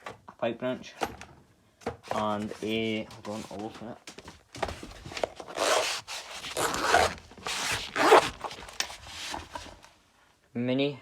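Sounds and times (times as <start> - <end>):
small scrapes: 5.4 - 9.8
zip pulled open: 5.5 - 8.8.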